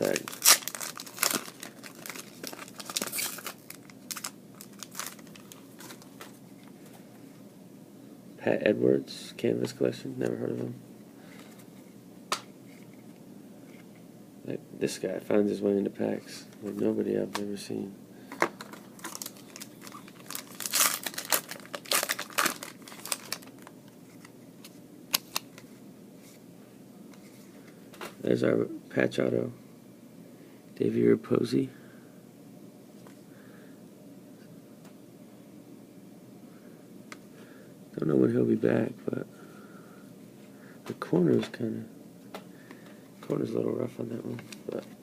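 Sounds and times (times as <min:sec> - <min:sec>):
foil wrapper crinkling: 0:00.0 - 0:06.3, 0:18.6 - 0:23.7
cards rustling and clicking: 0:00.0 - 0:06.8, 0:18.3 - 0:25.7.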